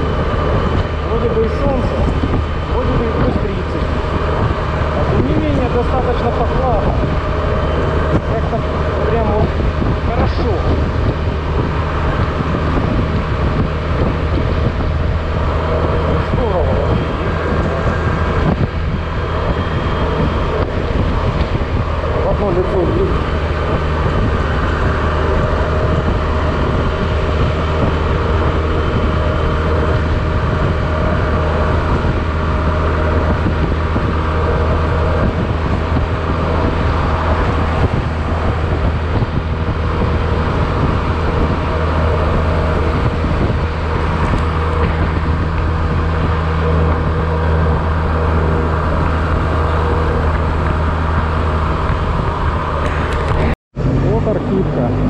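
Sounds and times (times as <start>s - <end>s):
scooter engine running steadily: 0.0s - 55.0s.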